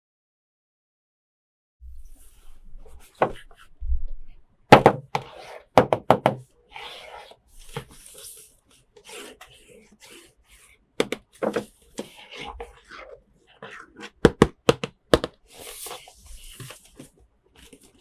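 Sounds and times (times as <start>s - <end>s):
plastic rubbing and rustling: 15.4s - 18.0s.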